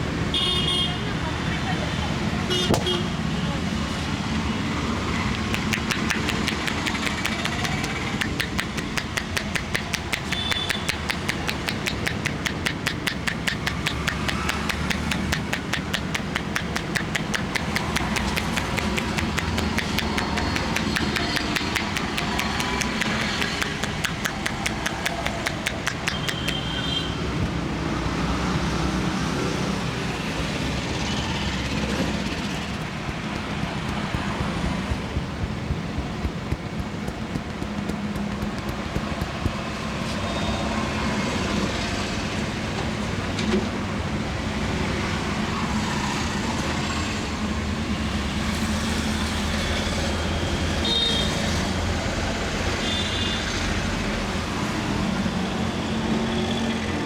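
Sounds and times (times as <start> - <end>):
street traffic: 0.0 - 57.0
rapid hand tapping on head: 5.2 - 26.8, 32.4 - 40.4.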